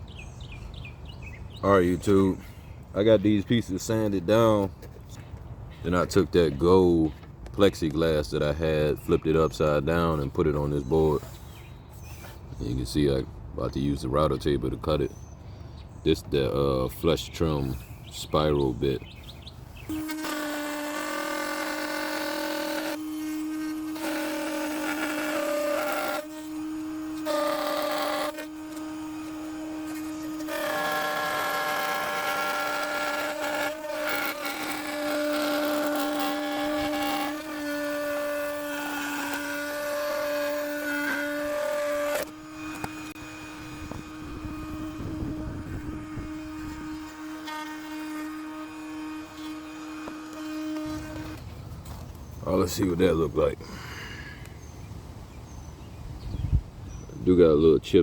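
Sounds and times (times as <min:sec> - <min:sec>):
router motor whining: 0:19.8 - 0:51.6.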